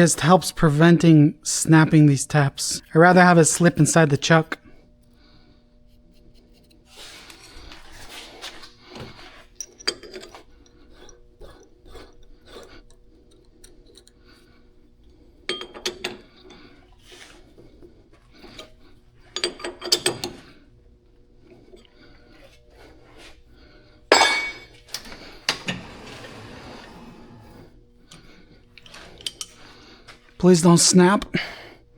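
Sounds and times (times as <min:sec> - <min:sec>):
metal tools clinking: 0:09.3 - 0:10.8, 0:19.3 - 0:20.5, 0:24.1 - 0:25.8, 0:28.8 - 0:29.6.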